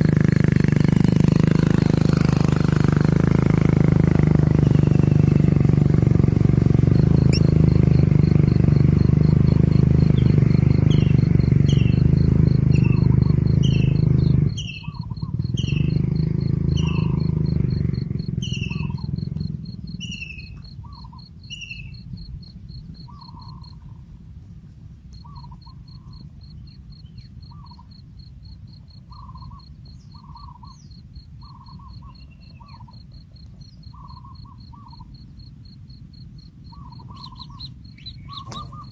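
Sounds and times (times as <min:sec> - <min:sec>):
loud low rumbling drone: 0:00.0 - 0:20.6
birds chirping: 0:00.0 - 0:24.0, 0:24.8 - 0:28.0, 0:29.1 - 0:35.2, 0:36.4 - 0:38.9
high insect-like pulsing: 0:00.0 - 0:24.0, 0:25.1 - 0:38.9.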